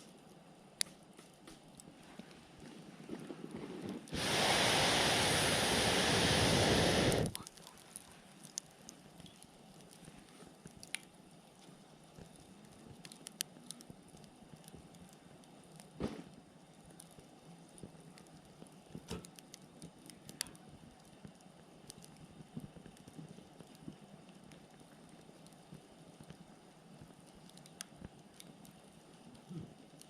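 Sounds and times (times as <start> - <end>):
campfire crackling and popping: 0.0 - 30.0
loud steady rushing noise: 4.2 - 7.3.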